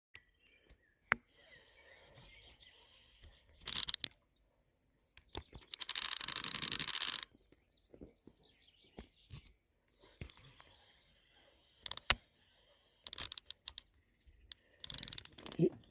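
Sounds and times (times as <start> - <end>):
birds chirping: 0.1 - 15.9
sharp clicks: 3.2 - 4.2, 5.1 - 7.6, 11.8 - 12.3, 13.0 - 15.7
fishing reel ticking: 3.6 - 4.0, 5.7 - 7.3, 10.5 - 13.9, 14.5 - 15.7.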